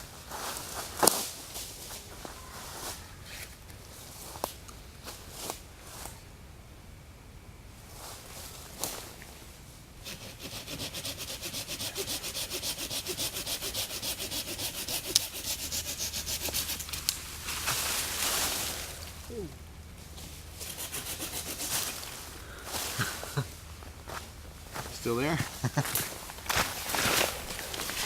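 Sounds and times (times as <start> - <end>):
pruning saw cutting wood: 10.0 - 17.6, 20.6 - 22.2
rustling: 15.0 - 28.0.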